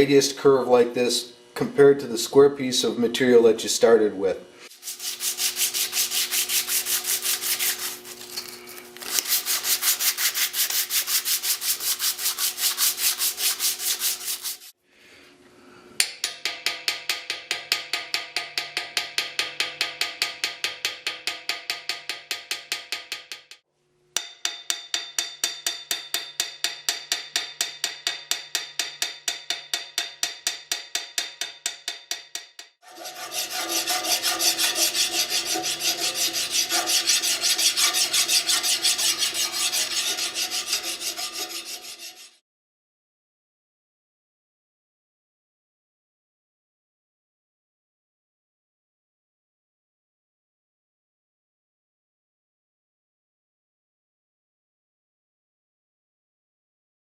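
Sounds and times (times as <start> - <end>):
abrasive rasping strokes: 4.6 - 14.7, 32.9 - 42.4.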